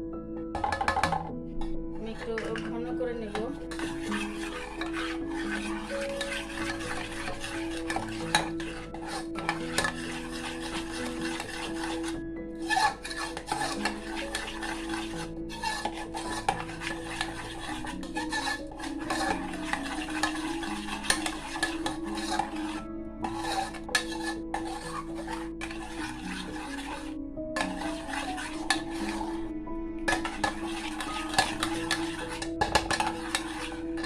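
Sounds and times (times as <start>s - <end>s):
background music: 0.0s - 34.0s
utensil scraping a pan: 0.0s - 34.0s.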